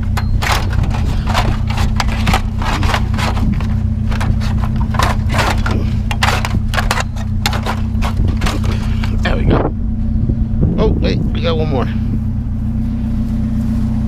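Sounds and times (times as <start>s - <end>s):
scrap metal scraping and knocking: 0.0s - 9.4s
engine idling: 0.0s - 14.0s.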